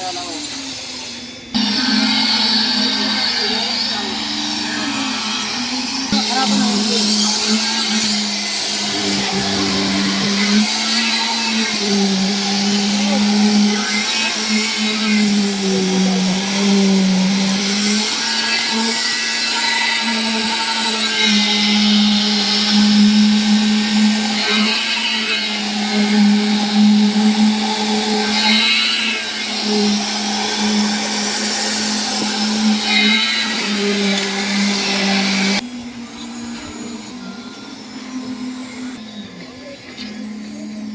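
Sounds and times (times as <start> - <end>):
power tool motor running: 0.0 - 40.9.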